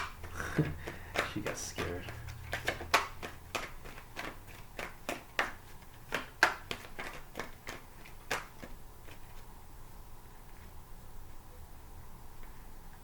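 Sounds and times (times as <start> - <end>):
cards being shuffled: 0.0 - 9.5.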